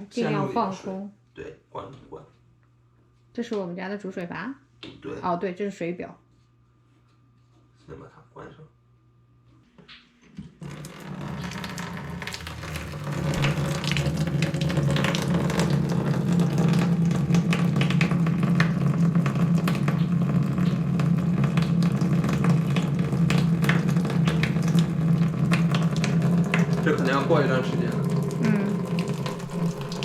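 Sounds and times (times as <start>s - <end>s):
water rushing from faucet: 10.6s - 30.0s.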